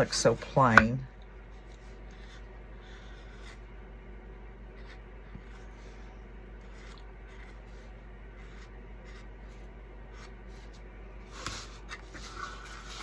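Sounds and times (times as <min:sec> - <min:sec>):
low hum: 0:00.0 - 0:13.0
marker scratching on surface: 0:02.1 - 0:03.6, 0:04.8 - 0:10.7.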